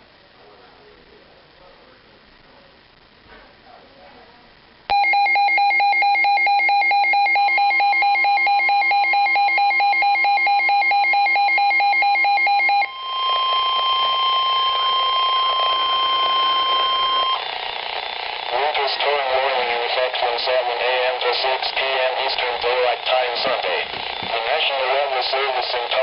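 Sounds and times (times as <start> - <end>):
steady alarm tone: 4.9 - 26.0
radio hiss: 12.9 - 26.0.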